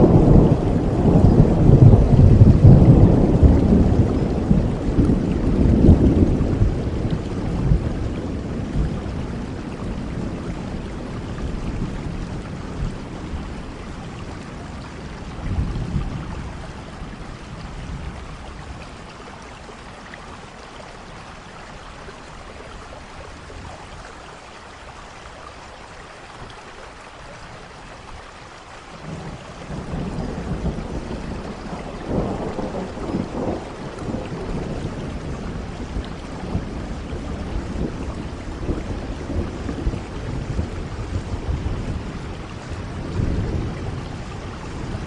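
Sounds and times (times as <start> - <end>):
thunder rumbling: 0.0 - 19.0, 28.9 - 45.0
steady rain falling: 0.0 - 45.0.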